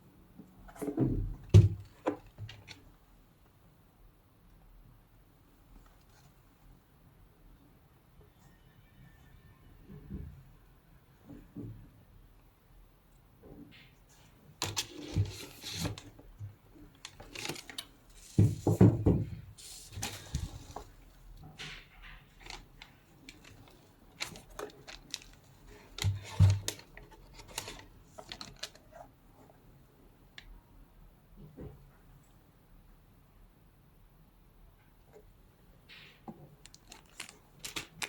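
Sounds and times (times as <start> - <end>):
paper and cardboard rustling: 14.6 - 16.2, 16.9 - 29.2, 36.7 - 38.0.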